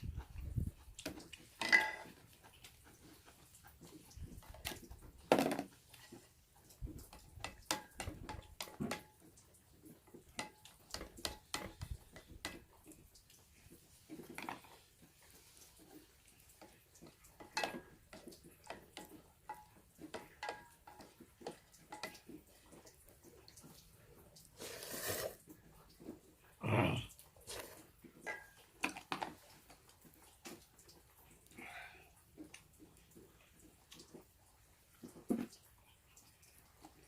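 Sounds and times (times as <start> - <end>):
utensils clinking on metal bowl: 1.5 - 2.3, 17.0 - 22.3
wet slurping: 24.4 - 25.7, 26.6 - 28.0.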